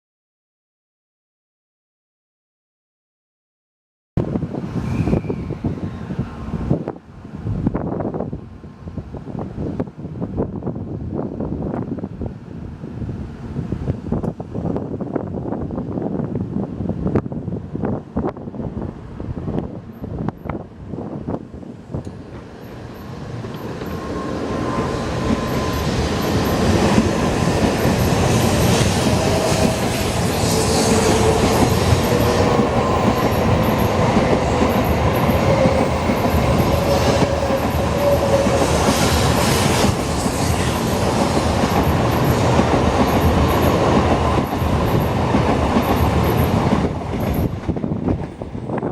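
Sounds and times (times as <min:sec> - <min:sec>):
train rumble and rail noise: 0:04.2 - 0:48.9
paired clicks of train cars: 0:19.5 - 0:20.7, 0:21.3 - 0:48.9.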